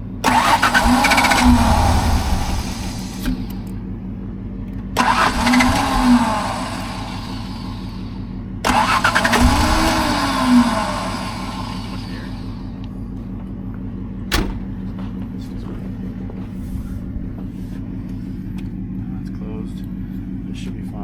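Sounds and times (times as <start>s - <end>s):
vehicle engine revving: 0.0s - 3.8s, 4.7s - 13.3s.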